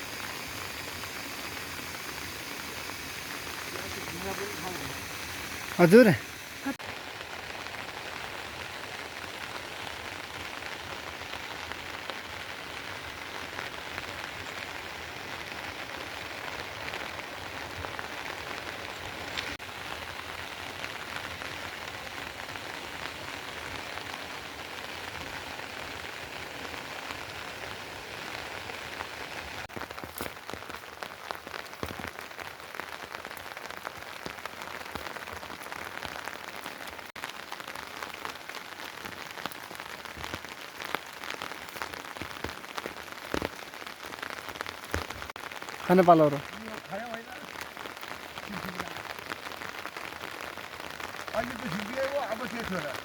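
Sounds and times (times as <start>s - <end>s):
raindrop hits: 0.0s - 7.0s, 29.6s - 53.0s
steady rain: 0.0s - 53.0s.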